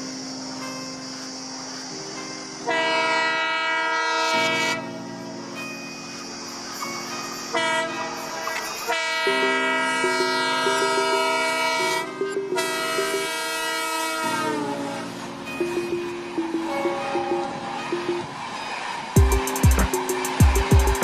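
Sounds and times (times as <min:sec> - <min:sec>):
locomotive horn blasts: 0:02.7 - 0:05.0, 0:07.5 - 0:15.2, 0:16.7 - 0:18.0.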